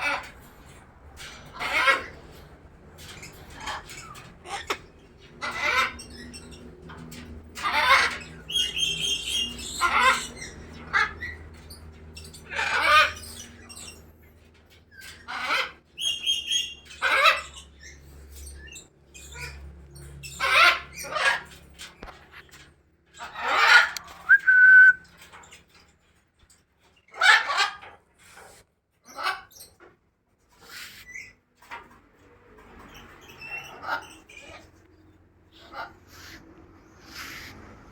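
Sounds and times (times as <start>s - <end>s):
songbirds calling harshly: 0.0s - 25.0s, 30.4s - 31.9s, 32.6s - 37.9s
bird whistled note: 24.3s - 25.0s.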